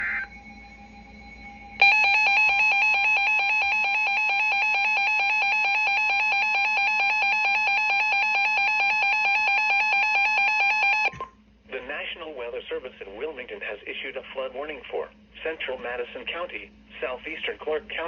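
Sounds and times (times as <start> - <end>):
two-tone warble alert: 0.0 - 11.2.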